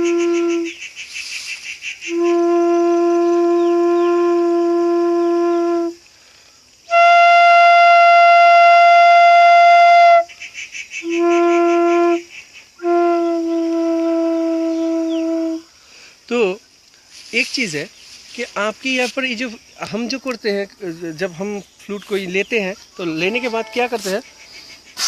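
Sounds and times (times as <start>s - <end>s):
bamboo flute playing long notes: 0.0s - 0.8s, 2.1s - 6.1s, 6.9s - 10.3s, 11.0s - 15.7s, 23.2s - 24.2s.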